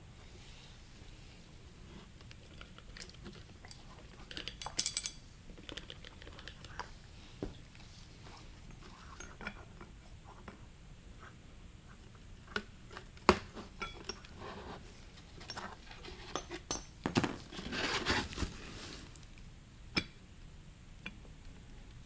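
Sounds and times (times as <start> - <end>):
metal parts clinking and scraping: 4.4 - 5.2.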